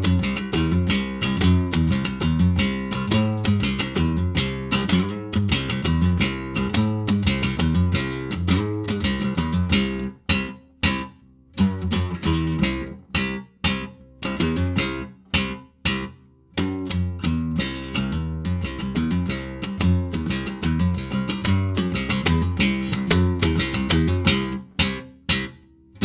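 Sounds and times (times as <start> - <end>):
guitar picked notes: 0.0 - 26.0
clipped guitar chords: 11.6 - 26.0.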